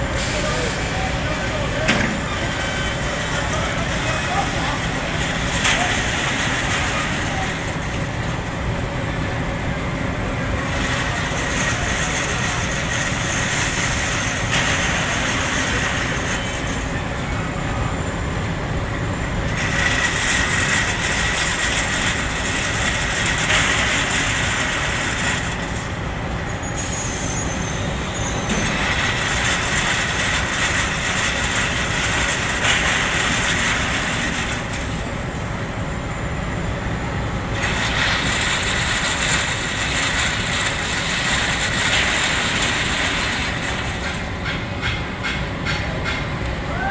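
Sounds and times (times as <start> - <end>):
machinery rumble: 0.0 - 46.9.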